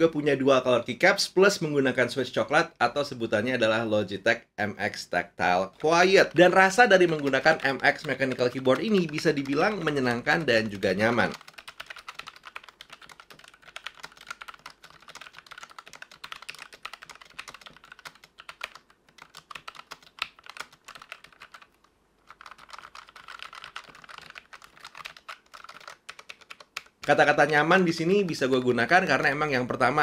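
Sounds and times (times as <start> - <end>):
typing on mechanical keyboard: 5.7 - 27.7.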